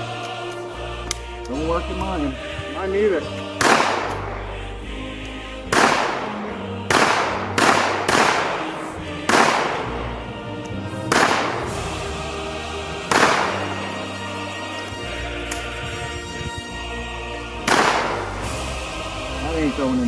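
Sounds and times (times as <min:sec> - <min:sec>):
background music: 0:00.0 - 0:20.0
pistol shots: 0:03.3 - 0:04.7, 0:05.6 - 0:10.4, 0:11.1 - 0:12.0, 0:13.0 - 0:14.3, 0:17.7 - 0:18.7.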